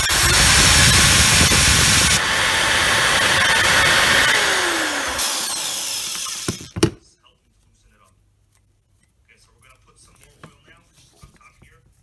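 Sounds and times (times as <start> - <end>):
power drill boring into plastic: 0.0 - 6.9.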